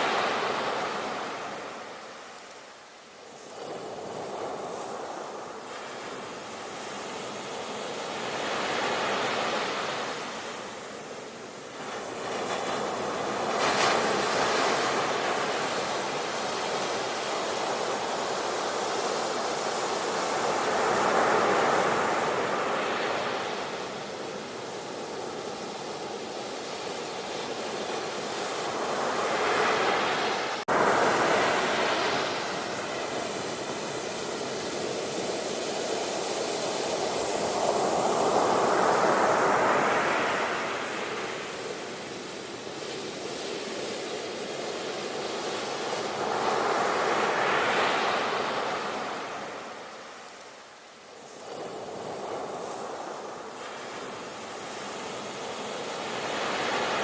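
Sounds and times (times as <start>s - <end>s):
sea waves breaking: 26.6s - 42.2s.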